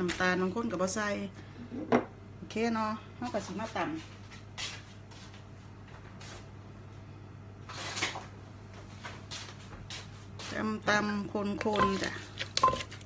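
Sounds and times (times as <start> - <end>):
steady low hum: 0.0 - 13.0
kitchen scraping and rustling: 7.6 - 8.4, 11.6 - 13.0.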